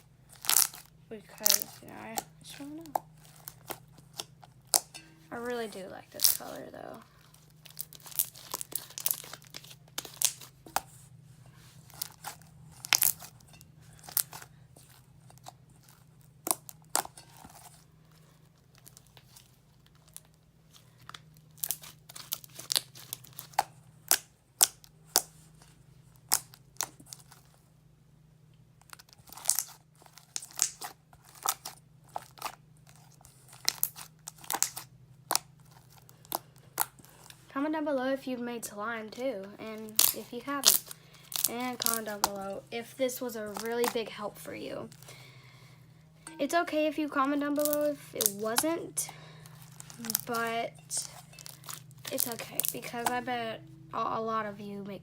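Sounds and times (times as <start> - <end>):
hands squishing slime: 0.4 - 17.8, 20.8 - 25.6, 29.2 - 37.5, 39.6 - 45.3, 46.3 - 53.4.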